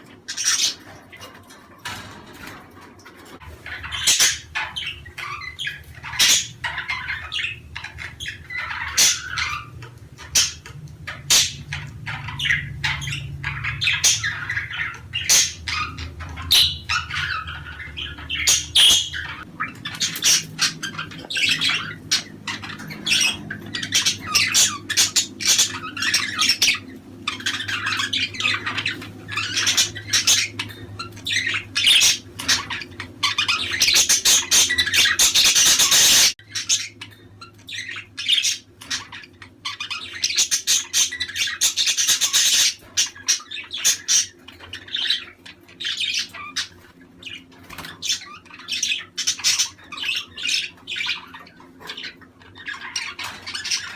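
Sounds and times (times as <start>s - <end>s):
budgerigars chattering: 0.0s - 53.9s
faint low hum: 0.0s - 53.9s.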